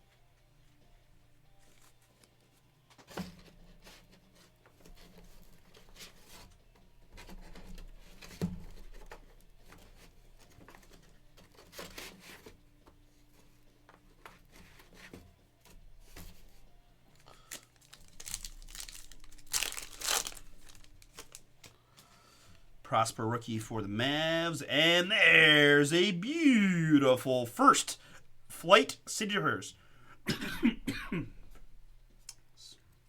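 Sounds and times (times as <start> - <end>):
card pack wrappers crinkling: 17.2 - 21.7.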